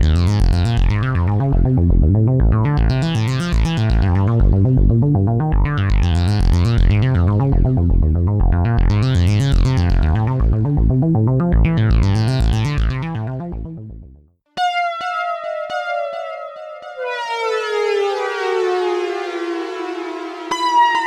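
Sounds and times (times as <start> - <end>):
steady low synth bass: 0.0 - 14.3
synthesizer note sequence: 14.6 - 21.0.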